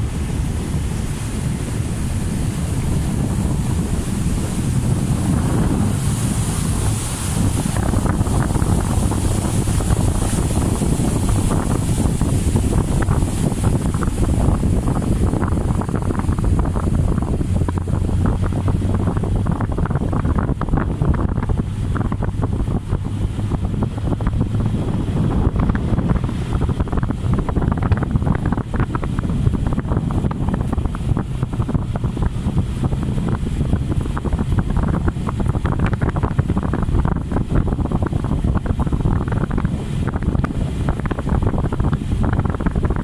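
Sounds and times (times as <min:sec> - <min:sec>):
wind buffeting microphone: 0:00.0 - 0:43.0.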